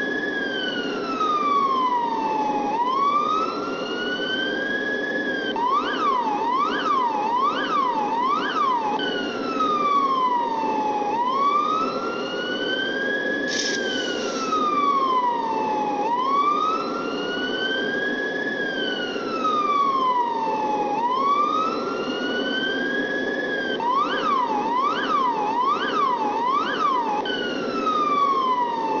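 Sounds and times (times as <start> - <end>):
electronic police siren: 0.0 - 29.0
brief hiss: 13.5 - 14.6.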